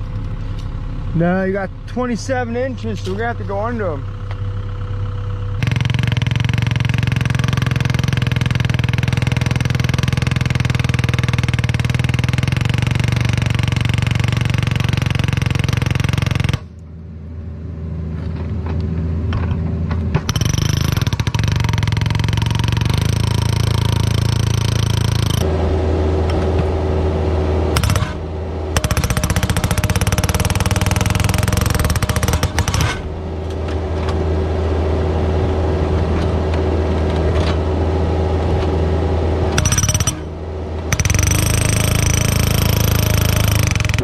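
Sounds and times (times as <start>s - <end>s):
diesel engine running: 0.0s - 44.0s
hydraulic hammer breaking rock: 5.6s - 16.8s, 20.1s - 25.5s, 27.7s - 33.1s, 39.5s - 40.3s, 40.9s - 44.0s.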